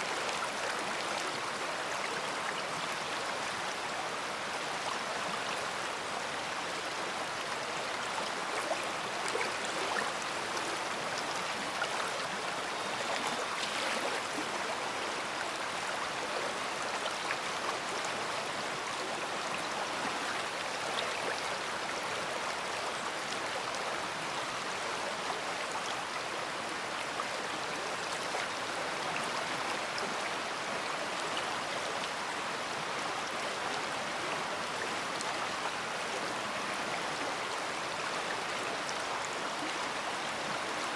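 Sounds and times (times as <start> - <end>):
river water rushing: 0.0 - 40.9
small splashes and trickles: 12.9 - 14.5.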